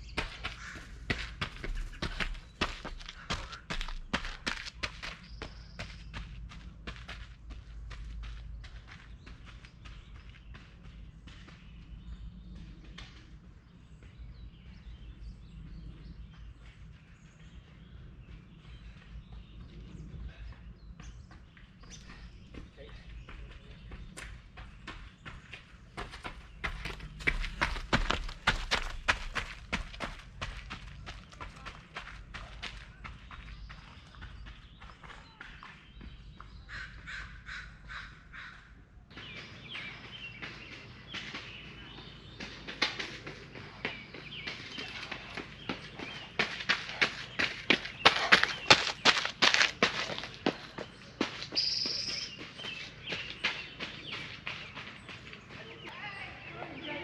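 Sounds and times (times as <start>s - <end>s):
small birds chirping: 0.0s - 57.0s
footstep-like clicks: 39.1s - 55.7s
high chirping calls: 50.0s - 57.0s.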